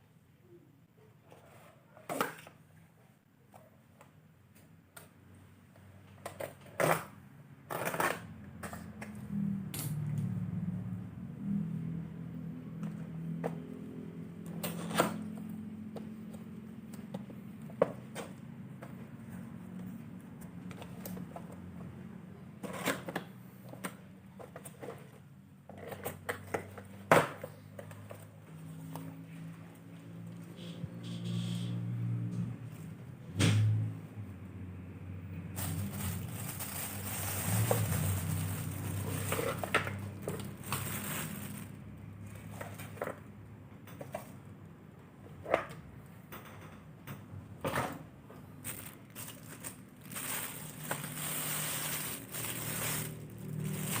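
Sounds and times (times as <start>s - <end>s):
packaging rustling scrapes: 35.6s - 41.8s, 48.6s - 54.0s.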